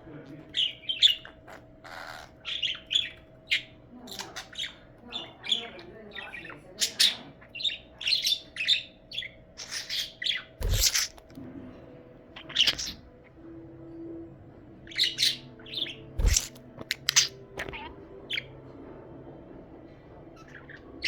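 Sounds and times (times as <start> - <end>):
budgerigar chirping: 0.5 - 11.3, 12.4 - 13.4, 14.8 - 18.6.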